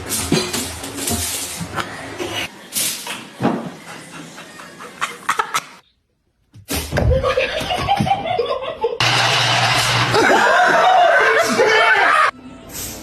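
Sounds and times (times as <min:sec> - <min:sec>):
people laughing: 0:04.0 - 0:05.8, 0:07.0 - 0:12.3.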